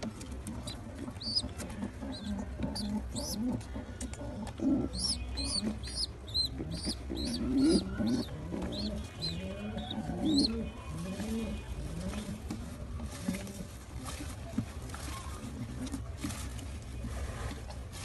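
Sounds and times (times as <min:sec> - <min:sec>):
baby pigeon begging squeaks: 0:00.5 - 0:12.3
pigeon cooing: 0:00.5 - 0:12.4.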